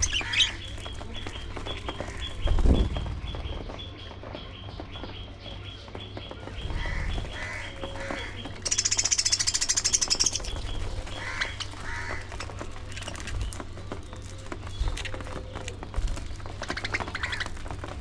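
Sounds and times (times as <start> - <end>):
budgerigars chirping: 0.0 - 12.6, 16.5 - 17.6
rounder bird calls: 0.0 - 13.2, 16.3 - 17.8.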